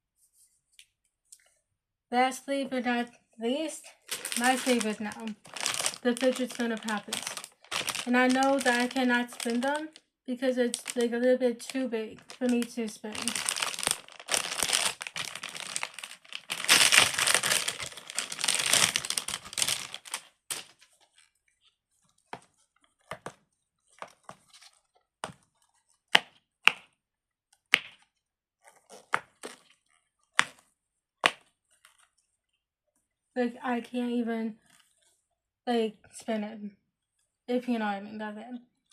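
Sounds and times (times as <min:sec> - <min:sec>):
crinkly plastic rustling: 0:03.8 - 0:26.0, 0:28.6 - 0:30.6.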